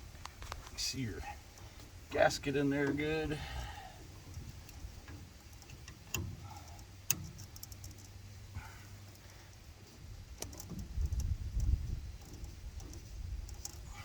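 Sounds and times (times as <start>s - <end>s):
low rumble of handling noise: 0.0s - 14.0s
metal clicks and clinks: 4.3s - 8.2s.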